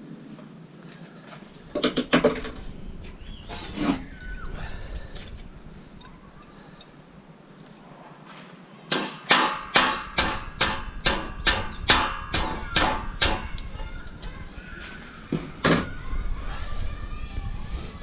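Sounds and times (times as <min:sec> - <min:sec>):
hammer striking metal: 0:08.9 - 0:13.6.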